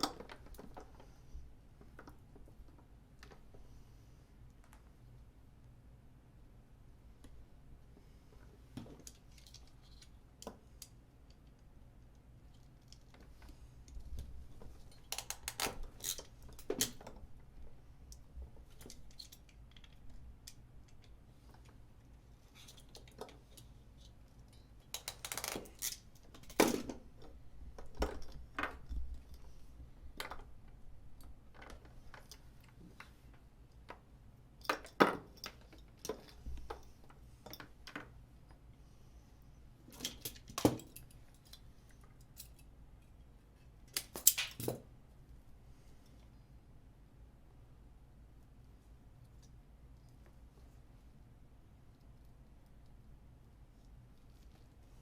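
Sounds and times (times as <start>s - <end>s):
hand tools and wire clicking: 8.8s - 17.3s, 18.1s - 21.8s, 22.5s - 29.5s, 39.9s - 44.8s.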